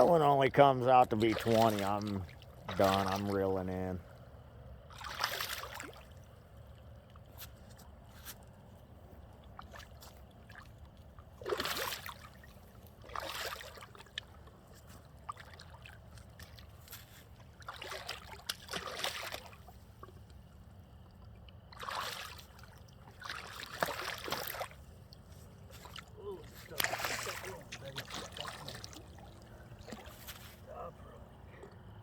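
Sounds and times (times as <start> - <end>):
water splashing: 0.0 - 4.2, 4.8 - 31.9
steady low hum: 0.0 - 32.0.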